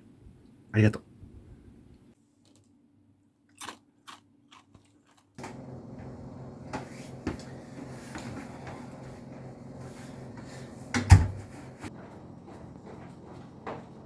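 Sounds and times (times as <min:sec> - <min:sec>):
faint clicks and crunching: 0:02.3 - 0:02.8, 0:03.5 - 0:05.4
steady low hum: 0:05.4 - 0:14.0.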